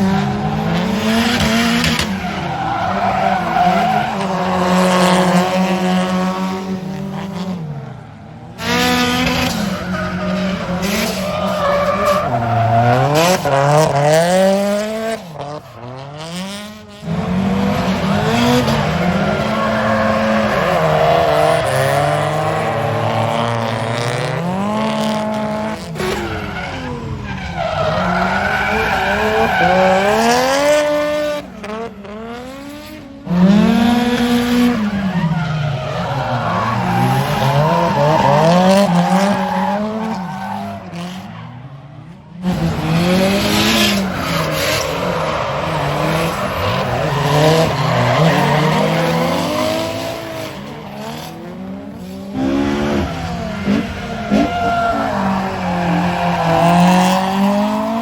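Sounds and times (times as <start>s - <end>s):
car engines revving: 0.0s - 58.0s
tyres squealing: 1.0s - 5.3s, 17.8s - 23.7s.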